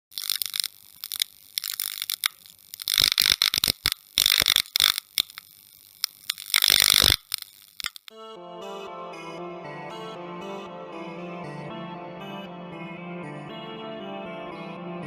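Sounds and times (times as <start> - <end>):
hissing crackling noise: 0.0 - 8.1
sharp clicks: 0.0 - 8.2
music: 8.1 - 15.0.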